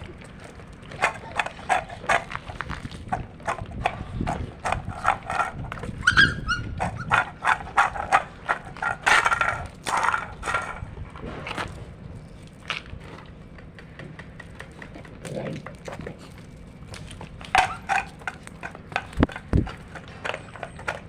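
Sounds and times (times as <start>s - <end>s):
dogs crunching food: 0.0s - 21.0s
dog whining: 5.8s - 8.2s, 17.5s - 21.0s.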